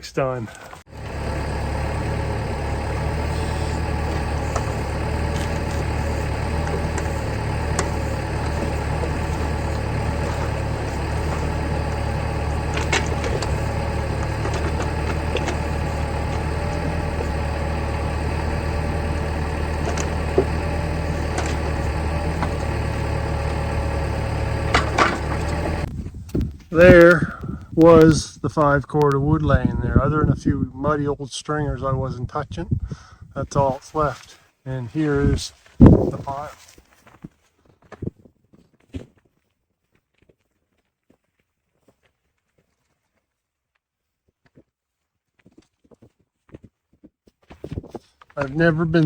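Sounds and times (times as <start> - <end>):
engine running steadily: 0.6 - 25.9, 48.4 - 49.0.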